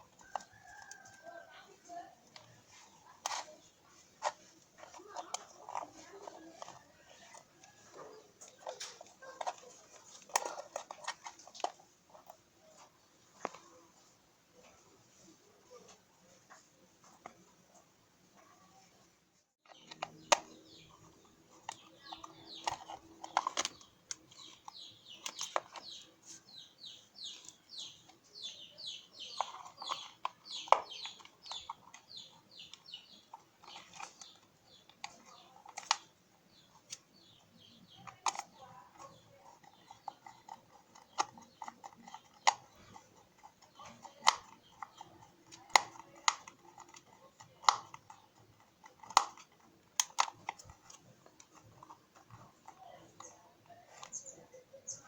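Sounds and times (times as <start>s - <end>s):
small parts clicking: 19.7s - 26.0s, 37.9s - 54.3s.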